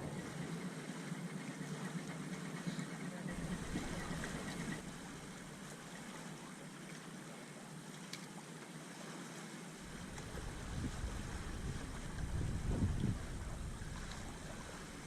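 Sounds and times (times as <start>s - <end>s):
wind rumbling on microphone: 0.0s - 0.6s, 3.3s - 5.6s, 9.8s - 15.0s
water washing: 1.3s - 6.3s, 9.8s - 15.0s.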